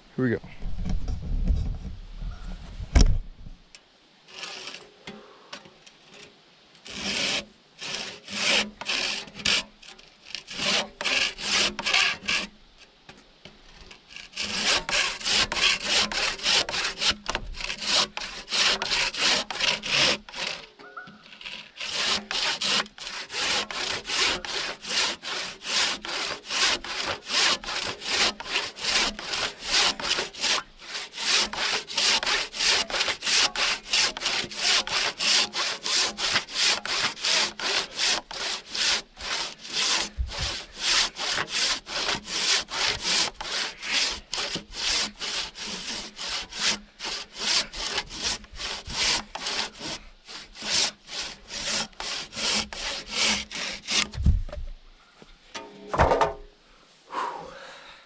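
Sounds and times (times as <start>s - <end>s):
handsaw cutting wood: 4.3s - 4.9s, 6.8s - 12.5s, 14.1s - 54.2s.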